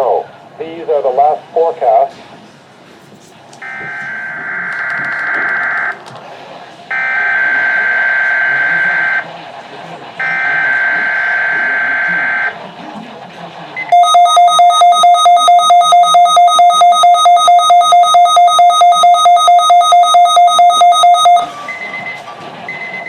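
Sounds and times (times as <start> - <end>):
rapid electronic alert beeping: 13.9 - 23.0.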